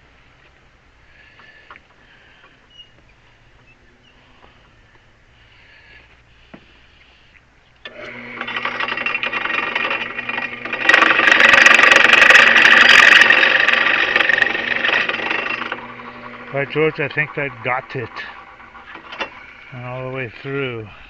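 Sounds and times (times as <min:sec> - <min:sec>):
electric drill drilling metal: 0:07.8 - 0:19.6.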